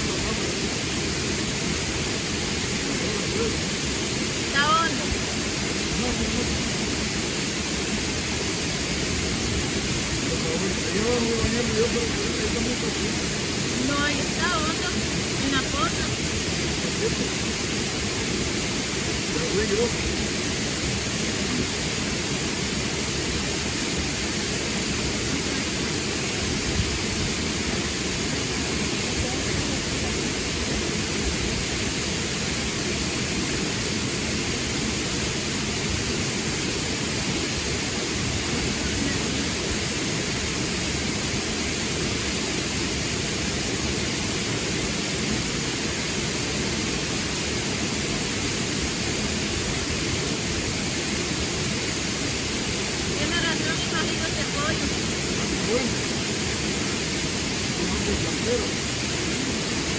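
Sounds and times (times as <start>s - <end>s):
river rushing: 0.0s - 59.9s.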